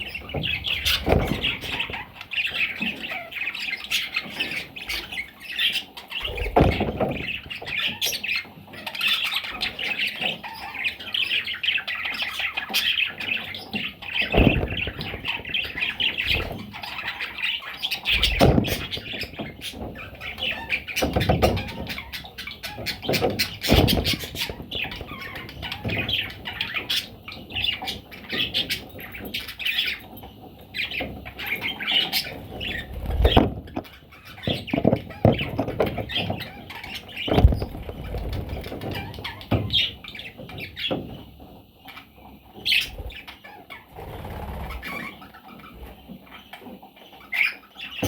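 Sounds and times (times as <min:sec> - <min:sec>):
budgies chirping and chattering: 0:00.0 - 0:48.0
thumps: 0:00.2 - 0:02.2, 0:06.2 - 0:07.7, 0:13.8 - 0:16.8, 0:18.1 - 0:26.6, 0:32.2 - 0:41.6
wings flapping: 0:14.0 - 0:17.4, 0:32.0 - 0:39.8, 0:43.9 - 0:45.2.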